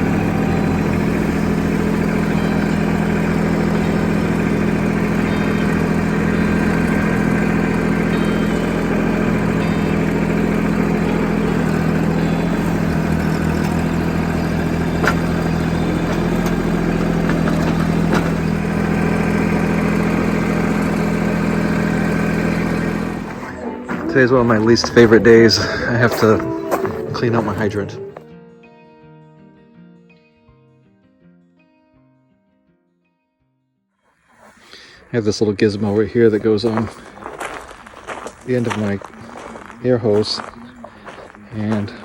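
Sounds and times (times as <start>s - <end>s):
engine running steadily: 0.0s - 28.2s.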